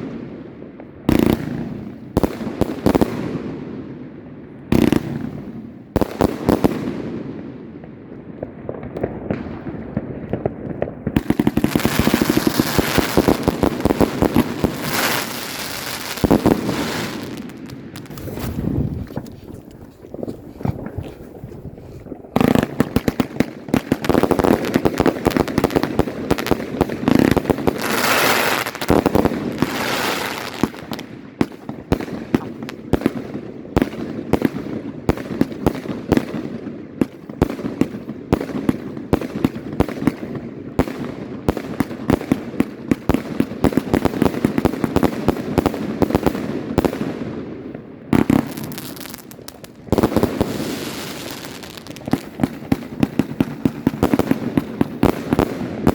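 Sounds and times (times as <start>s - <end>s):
firework crackling: 8.7s - 33.1s, 41.8s - 55.9s.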